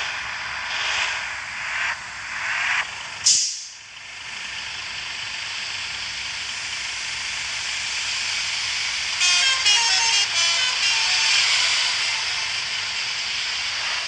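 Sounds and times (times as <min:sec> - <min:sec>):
steady vehicle noise: 0:00.0 - 0:14.0
air brakes hissing: 0:03.2 - 0:03.9.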